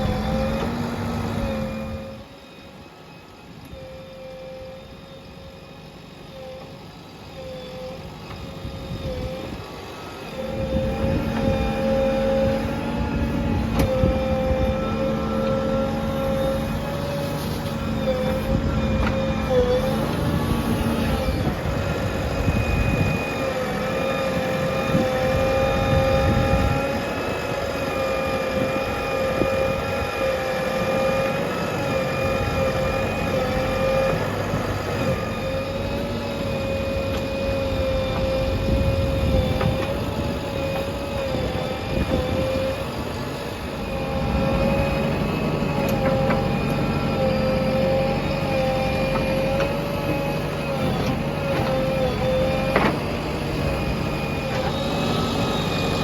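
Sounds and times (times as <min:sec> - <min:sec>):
diesel engine rumble: 0:00.0 - 0:02.3, 0:04.1 - 0:56.0
steady high whine: 0:00.0 - 0:56.0.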